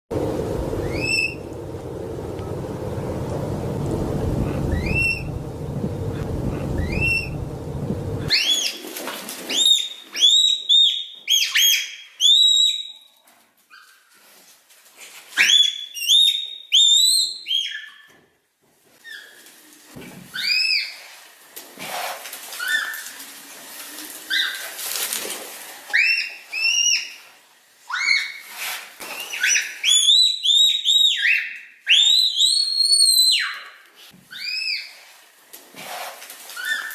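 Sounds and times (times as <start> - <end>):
low rumbling background: 0.1 - 8.3.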